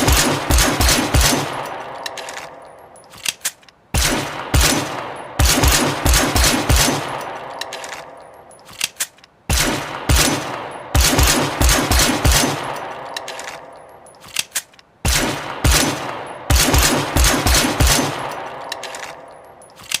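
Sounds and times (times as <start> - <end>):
automatic gunfire bursts: 0.0 - 2.4, 4.0 - 8.0, 9.5 - 12.8, 15.1 - 19.1.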